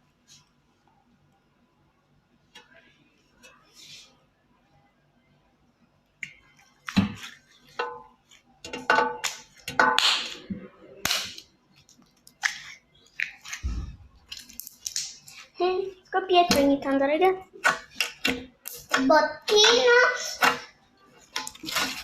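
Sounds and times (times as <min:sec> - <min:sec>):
slime popping and crackling: 0:09.2 - 0:15.5.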